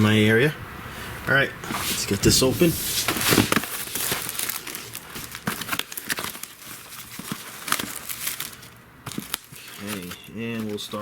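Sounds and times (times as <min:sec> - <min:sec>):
packaging torn and crinkled: 0:03.2 - 0:11.0.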